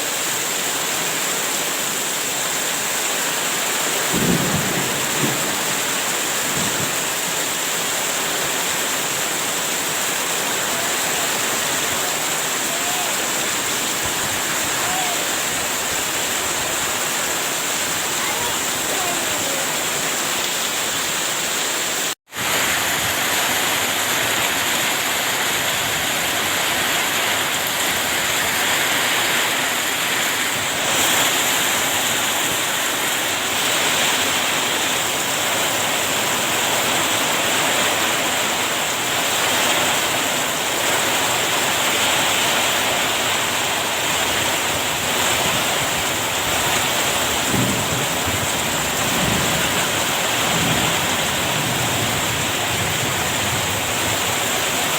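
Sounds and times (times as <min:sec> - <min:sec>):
heavy rain pouring: 0:00.0 - 0:54.9
strong wind: 0:10.0 - 0:21.0, 0:41.2 - 0:54.9.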